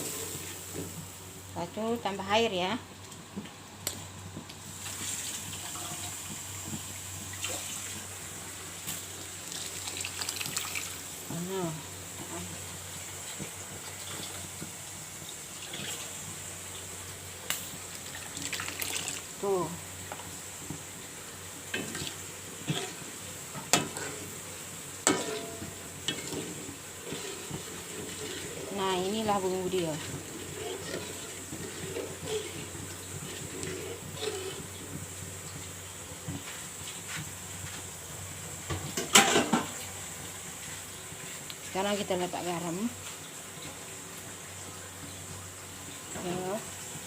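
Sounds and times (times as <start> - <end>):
water pouring and splashing: 4.7 - 11.3, 12.9 - 16.9, 17.6 - 21.0, 21.7 - 37.8
utensils clinking against cookware: 25.0 - 27.6.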